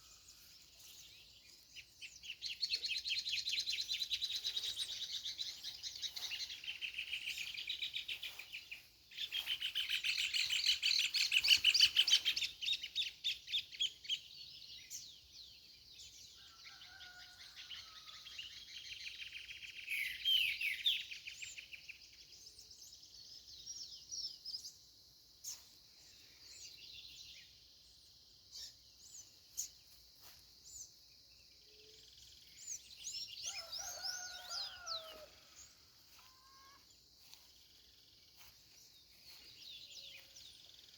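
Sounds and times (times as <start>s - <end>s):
songbirds chirping and trilling: 0.0s - 40.9s.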